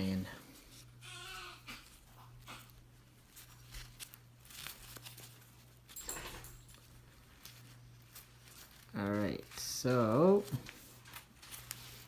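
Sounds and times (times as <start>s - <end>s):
baby crying faintly: 1.0s - 1.9s
rustles and clicks of cord and fabric: 1.6s - 12.0s.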